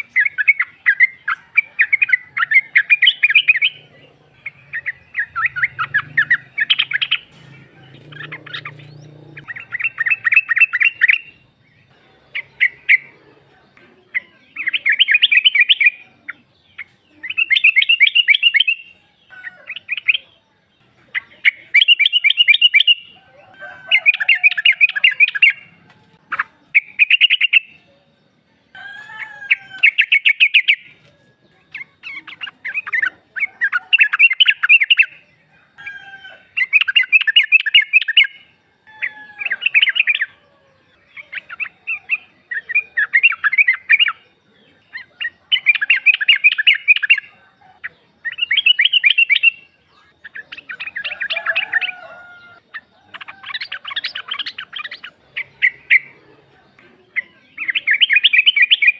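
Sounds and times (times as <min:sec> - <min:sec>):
bird rapid chattering calls: 0:00.0 - 0:11.5, 0:23.8 - 0:27.8, 0:41.0 - 0:56.2.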